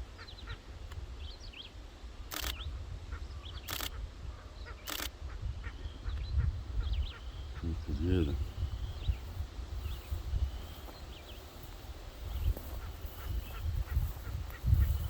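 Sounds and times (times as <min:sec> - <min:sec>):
low rumble of wind: 0:00.0 - 0:15.0
camera shutter firing: 0:02.3 - 0:02.6, 0:03.6 - 0:04.0, 0:04.8 - 0:05.1
faint birds calling: 0:02.3 - 0:15.0.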